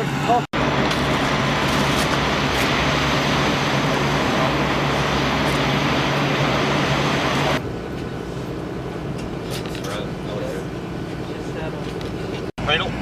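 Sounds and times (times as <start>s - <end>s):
machinery rushing noise: 0.0s - 7.8s
constant low hum: 0.0s - 13.0s.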